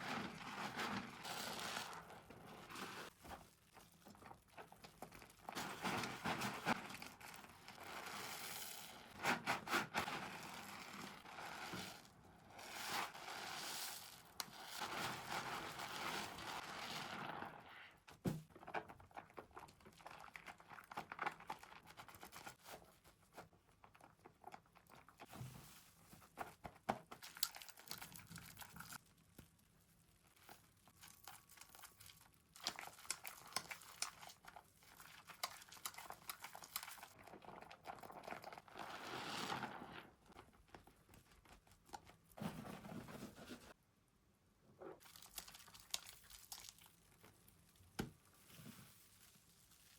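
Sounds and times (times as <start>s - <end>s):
soap lather crackling: 27.2s - 42.1s, 45.0s - 49.9s.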